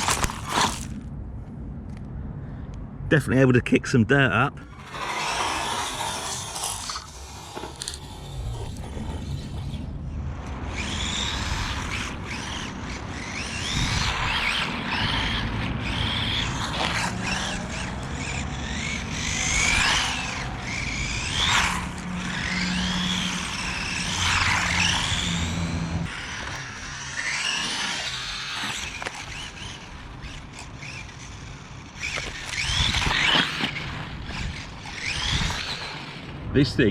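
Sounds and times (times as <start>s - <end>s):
rc car motor whine: 0.0s - 0.9s, 4.6s - 36.4s
tyres crunching on gravel: 0.0s - 1.1s, 10.4s - 36.4s.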